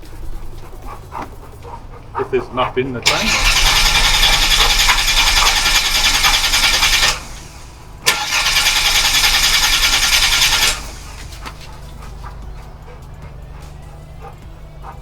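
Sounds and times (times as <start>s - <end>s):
starter motor cranking: 3.0s - 11.7s.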